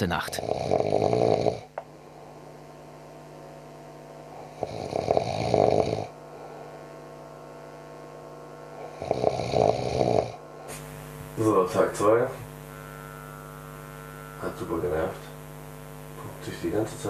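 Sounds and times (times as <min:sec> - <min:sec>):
steady electrical hum: 0:00.0 - 0:17.0
man snoring: 0:00.1 - 0:01.8, 0:04.2 - 0:06.7, 0:08.7 - 0:10.8.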